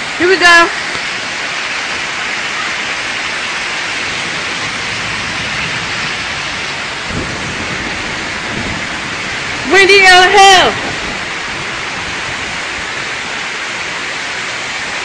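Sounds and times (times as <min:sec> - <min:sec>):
heavy rain pouring: 0:00.0 - 0:15.0
strong wind: 0:00.0 - 0:15.0.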